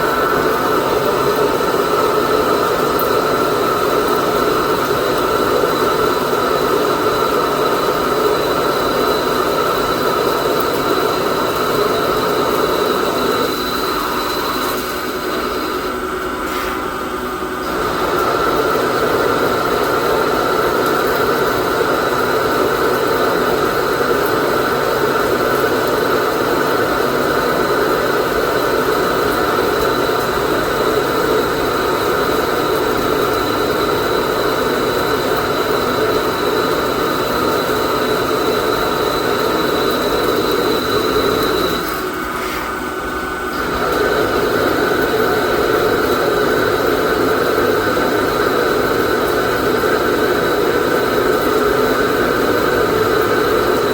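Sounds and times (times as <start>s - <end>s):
high whine: 0.0s - 18.8s
lathe machining noise: 0.0s - 53.9s.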